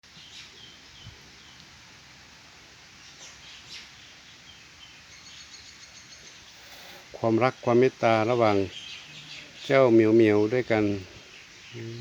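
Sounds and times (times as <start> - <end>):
steady background hiss: 0.0 - 12.0
faint bird chirps: 3.0 - 12.0.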